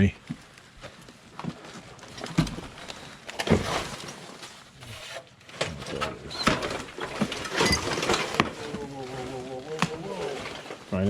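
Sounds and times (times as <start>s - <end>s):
scraping and rustling: 0.9s - 11.0s
clunks and knocks: 2.2s - 4.1s, 4.8s - 11.0s.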